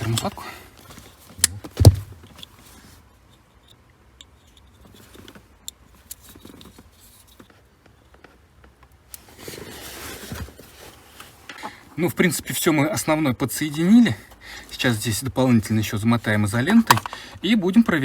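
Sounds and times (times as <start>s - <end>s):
hands handling wires and parts: 0.0s - 12.6s, 13.5s - 18.0s
sharp knocks: 1.7s - 2.2s.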